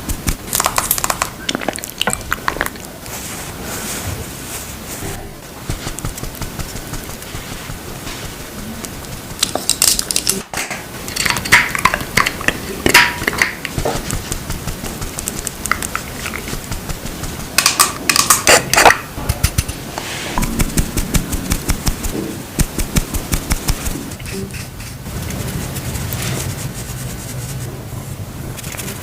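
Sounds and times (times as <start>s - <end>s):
rustling: 0.0s - 29.0s
makeup cases clicking and tapping: 11.1s - 14.0s, 17.6s - 19.0s.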